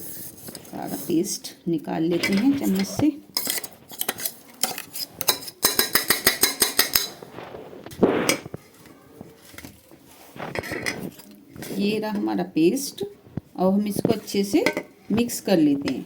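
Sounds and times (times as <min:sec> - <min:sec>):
metal spoon clinking on jar: 0:02.3 - 0:07.2.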